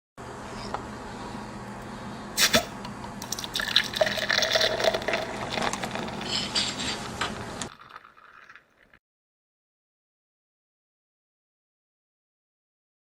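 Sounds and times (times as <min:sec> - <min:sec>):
liquid running and splashing: 0:03.2 - 0:06.4.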